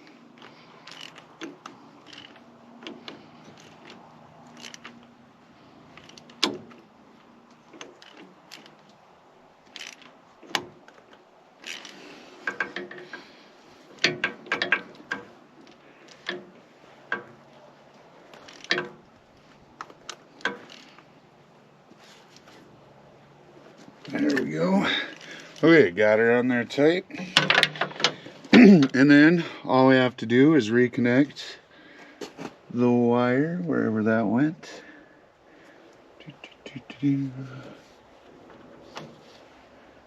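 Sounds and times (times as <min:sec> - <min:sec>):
hand ratchet clicking: 0:00.4 - 0:05.0, 0:09.7 - 0:10.7, 0:11.6 - 0:13.2, 0:18.3 - 0:19.0, 0:19.8 - 0:21.1.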